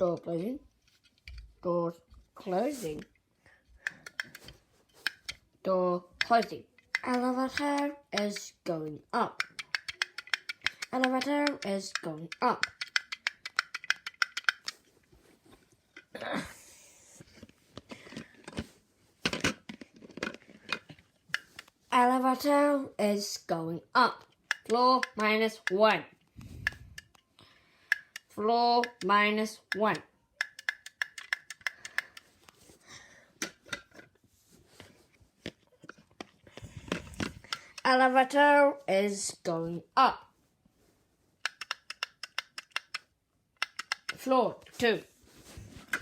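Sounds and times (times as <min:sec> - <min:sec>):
breathy rustling noise: 0:14.8 - 0:19.2, 0:31.8 - 0:33.4, 0:44.8 - 0:46.0.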